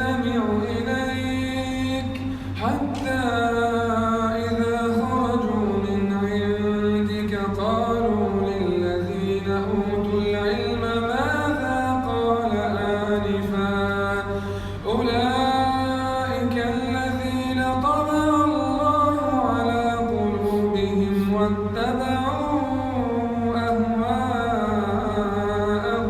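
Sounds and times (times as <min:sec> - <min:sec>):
man chanting melodically: 0:00.0 - 0:26.0.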